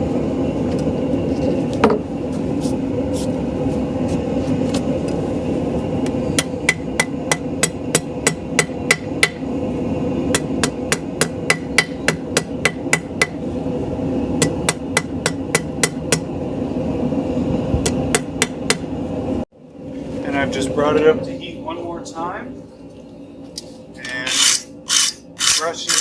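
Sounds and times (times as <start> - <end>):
steady hum: 0.0 - 26.0
hammer striking steel on anvil: 6.4 - 9.4, 10.3 - 13.4, 14.4 - 16.3.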